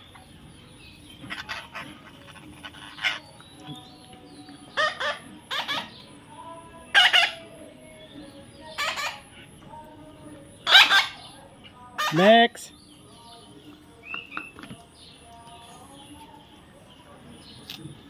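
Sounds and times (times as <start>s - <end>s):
parrot squawking: 1.3s - 3.3s, 4.8s - 6.0s, 6.9s - 7.4s, 8.8s - 9.3s, 10.6s - 11.3s, 12.0s - 12.2s.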